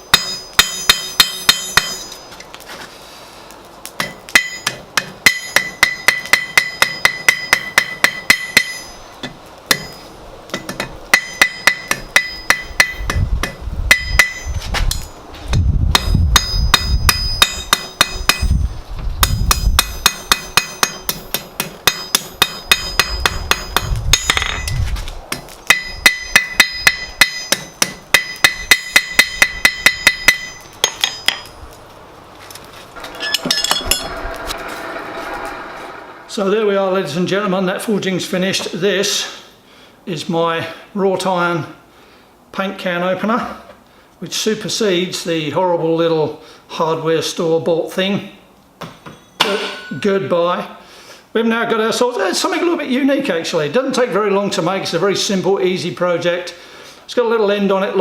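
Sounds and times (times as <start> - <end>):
hammer striking iron on anvil: 0.0 - 2.3, 4.0 - 15.2, 15.9 - 18.6, 19.2 - 31.6, 33.0 - 34.5, 48.8 - 50.0
low rumble: 32.9 - 37.2.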